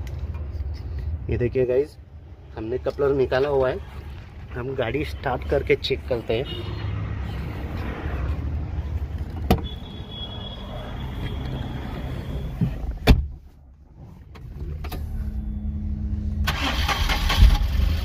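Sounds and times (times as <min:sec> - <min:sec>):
engine cranking: 0:16.5 - 0:18.0.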